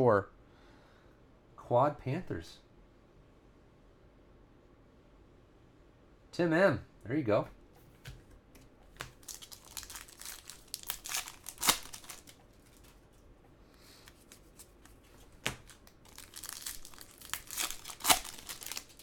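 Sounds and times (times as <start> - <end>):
wrappers crinkling and tearing: 9.0 - 13.3, 14.1 - 19.0.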